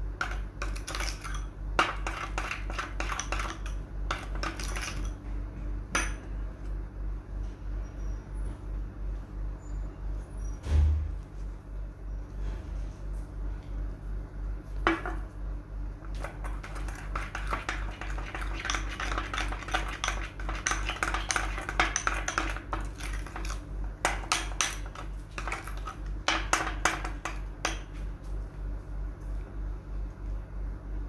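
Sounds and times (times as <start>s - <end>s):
utensil clinking against bowl: 0.2s - 5.2s, 16.1s - 28.0s
low pulsing hum: 5.2s - 14.6s.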